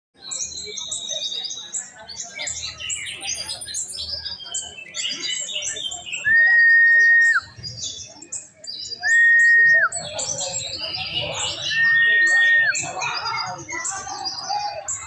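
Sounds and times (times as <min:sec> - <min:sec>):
bird twittering song: 0:00.2 - 0:15.0
steady whistled tone: 0:09.0 - 0:09.9, 0:11.6 - 0:13.0.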